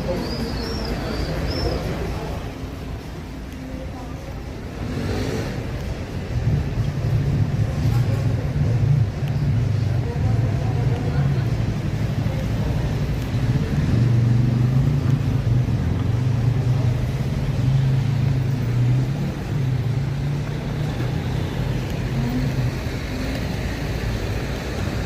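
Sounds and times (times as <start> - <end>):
street background noise: 0.0 - 25.0.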